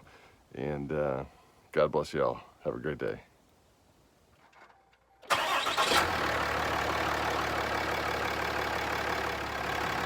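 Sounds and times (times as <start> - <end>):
diesel engine starting and idling: 5.3 - 10.0.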